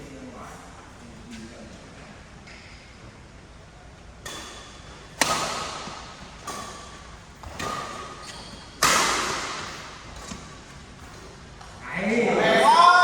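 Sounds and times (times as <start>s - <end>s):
rackets striking shuttlecock: 4.2s - 10.5s.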